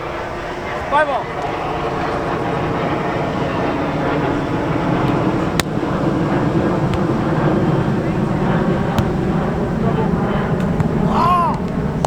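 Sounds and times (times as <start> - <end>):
loud low roar: 4.3 - 12.0
volleyball being struck: 8.9 - 9.4, 10.6 - 11.2.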